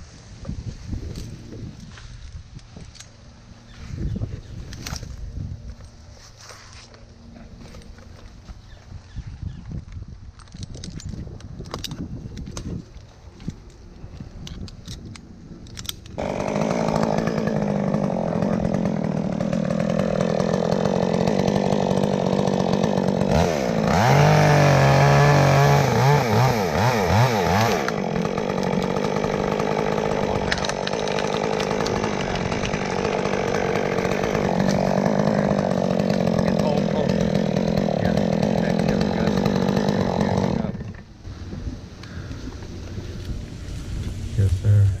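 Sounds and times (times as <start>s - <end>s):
chainsaw running and revving: 16.2s - 41.2s.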